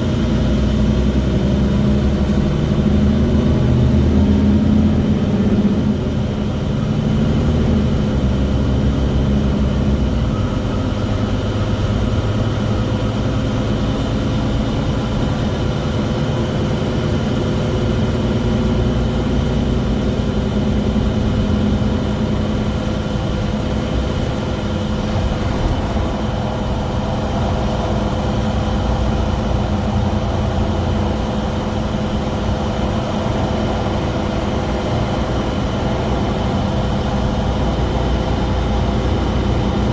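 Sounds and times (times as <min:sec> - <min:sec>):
bus engine rumble: 0:00.0 - 0:39.9
steady high whine: 0:08.6 - 0:39.9.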